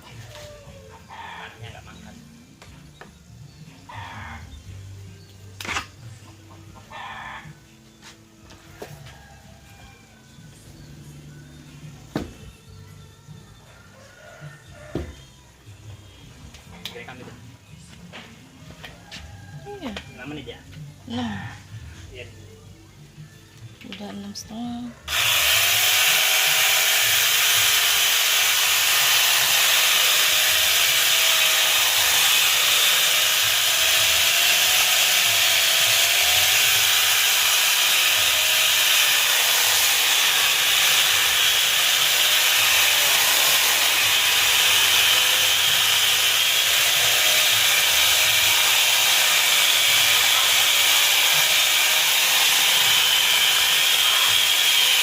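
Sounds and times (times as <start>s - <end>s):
chainsaw cutting wood: 25.1s - 55.0s.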